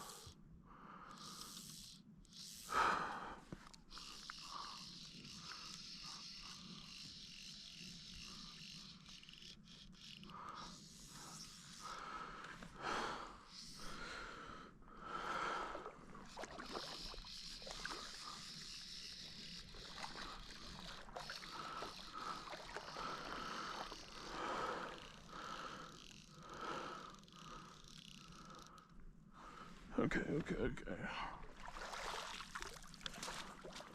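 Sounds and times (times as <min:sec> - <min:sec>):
person breathing heavily: 0:02.6 - 0:04.9, 0:10.4 - 0:16.1, 0:20.4 - 0:29.9.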